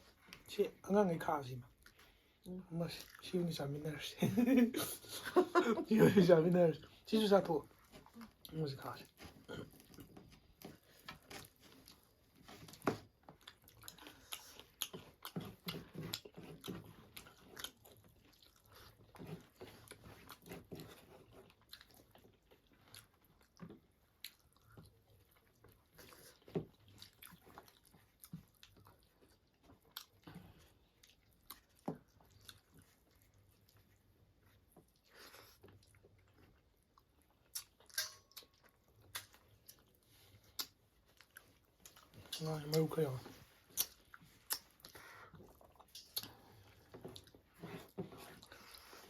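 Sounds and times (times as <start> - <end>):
person chewing food: 1.7 - 3.6, 4.8 - 49.0
mouth clicks and smacks: 37.4 - 39.8, 43.6 - 46.4.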